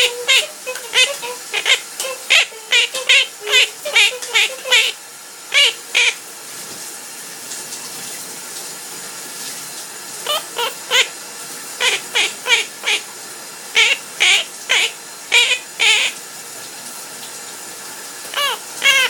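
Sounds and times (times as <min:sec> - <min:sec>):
parrot calling: 0:00.0 - 0:06.2, 0:10.2 - 0:11.2, 0:11.8 - 0:13.1, 0:13.7 - 0:16.2, 0:18.3 - 0:19.0
shower running: 0:00.0 - 0:19.0.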